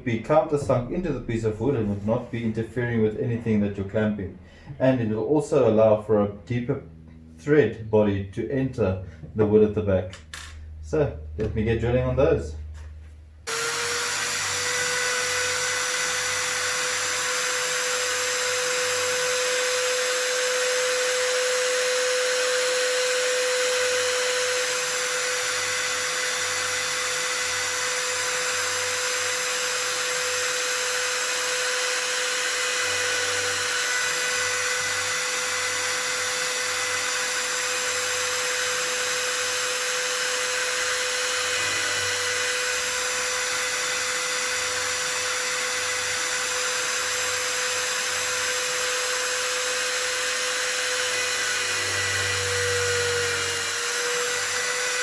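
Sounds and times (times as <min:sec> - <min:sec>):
electric drill drilling wood: 0:13.5 - 0:55.0.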